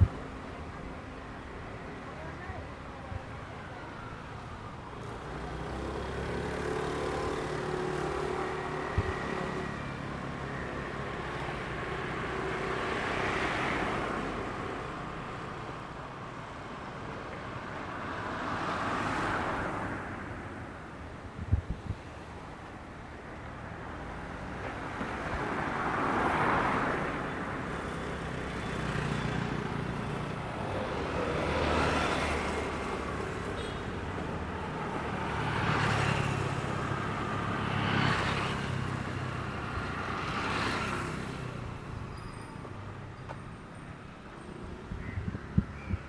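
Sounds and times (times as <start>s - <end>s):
motor vehicles passing: 5.2s - 10.4s.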